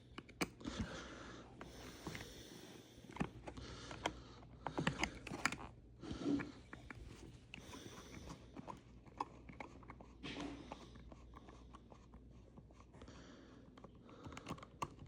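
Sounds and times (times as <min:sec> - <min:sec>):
plastic packaging rustling and clicking: 0:03.0 - 0:11.4.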